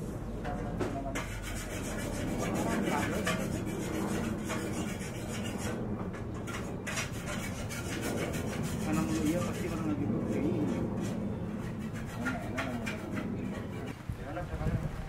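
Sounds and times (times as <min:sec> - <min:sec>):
rough scraping and rubbing: 0:00.5 - 0:14.5.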